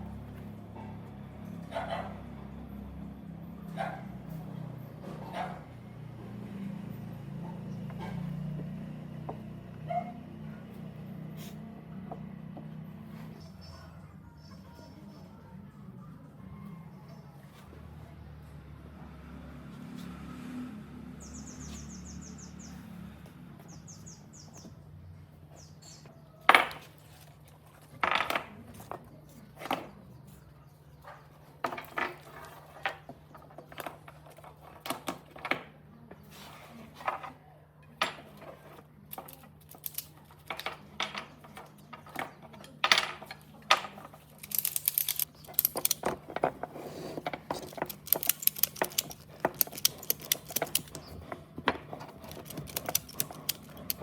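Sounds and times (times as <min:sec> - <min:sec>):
sharp clicks and knocks: 0:39.1 - 0:41.3, 0:43.8 - 0:46.6, 0:47.4 - 0:54.0.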